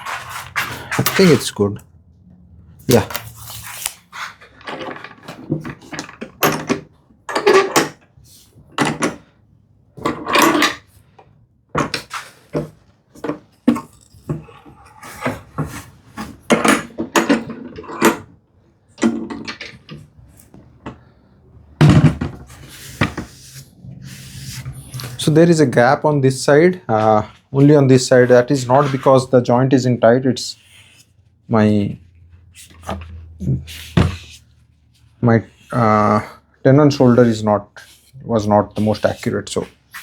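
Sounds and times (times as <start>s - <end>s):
wood and metal knocks and clatters: 4.5s - 8.0s, 10.0s - 10.8s, 11.8s - 18.3s.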